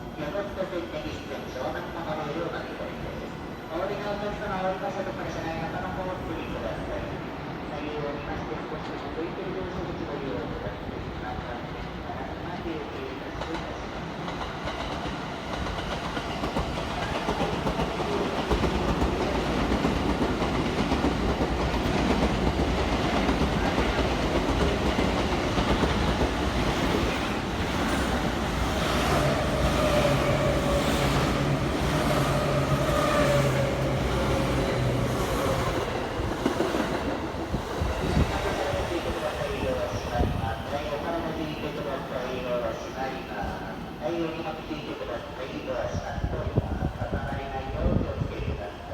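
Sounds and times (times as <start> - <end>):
train wheels clattering over rails: 13.4 - 39.4.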